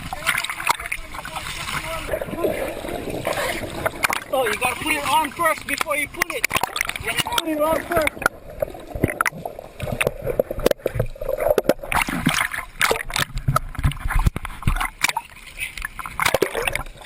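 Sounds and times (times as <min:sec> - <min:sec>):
sea water splashing: 0:00.0 - 0:17.0.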